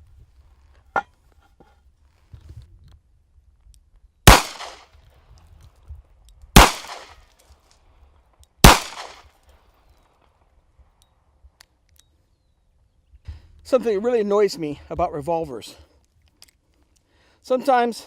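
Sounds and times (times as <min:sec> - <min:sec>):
revolver shots ringing: 0:08.7 - 0:09.2.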